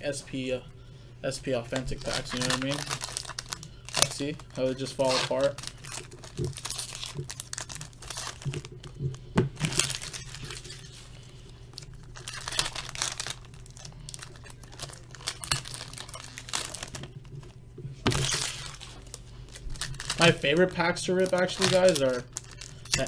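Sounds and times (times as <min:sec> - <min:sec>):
foil packs tearing and crinkling: 0:01.7 - 0:09.0, 0:09.6 - 0:11.1, 0:11.7 - 0:17.4, 0:18.0 - 0:23.0.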